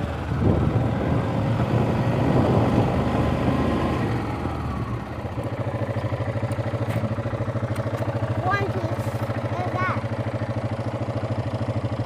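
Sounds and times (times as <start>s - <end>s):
atv engine running: 0.0s - 12.0s.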